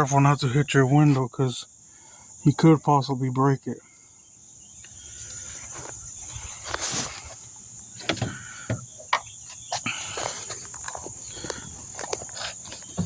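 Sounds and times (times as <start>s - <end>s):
crickets chirping: 0.0s - 13.0s
short hiss: 6.3s - 7.5s.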